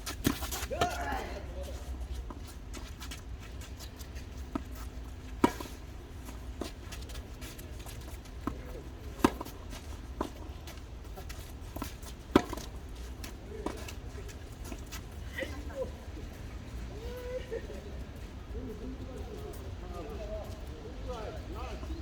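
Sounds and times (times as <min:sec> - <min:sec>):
tennis balls struck by rackets: 0:00.0 - 0:01.5, 0:05.4 - 0:05.8, 0:08.4 - 0:15.0.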